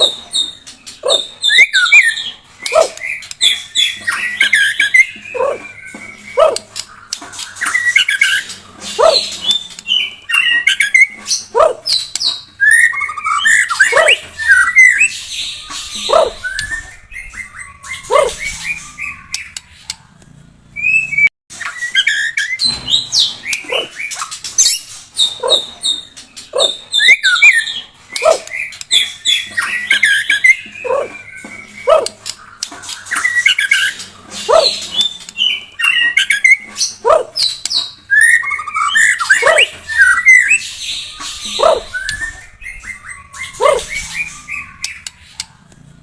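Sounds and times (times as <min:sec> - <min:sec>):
bird singing whistled phrases: 0:07.5 - 0:19.7, 0:20.8 - 0:25.8, 0:26.5 - 0:45.2.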